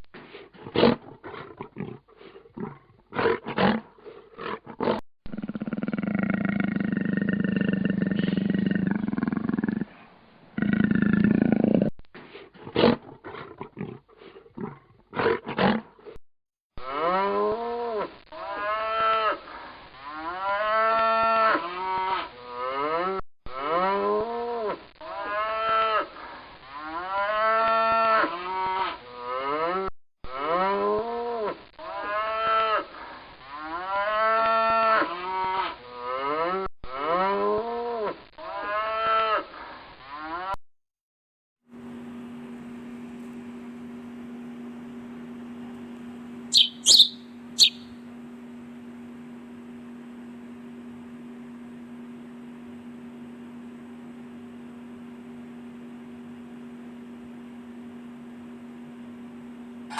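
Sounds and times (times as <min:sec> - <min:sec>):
cattle mooing: 0:16.8 - 0:19.4, 0:25.0 - 0:26.1, 0:31.8 - 0:32.9
held animal call: 0:46.5 - 0:48.0.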